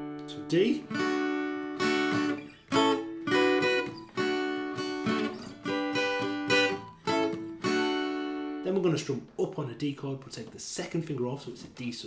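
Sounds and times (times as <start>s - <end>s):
acoustic guitar strumming chords: 0.0s - 9.3s.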